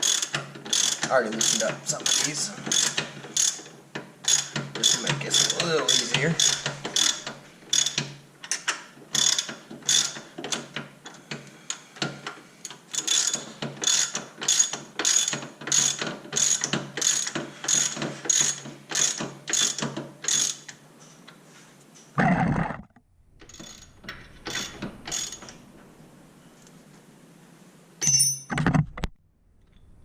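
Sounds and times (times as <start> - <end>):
ratchet wrench clicking: 0.0 - 3.6, 4.3 - 8.6, 12.9 - 20.6, 23.5 - 25.5.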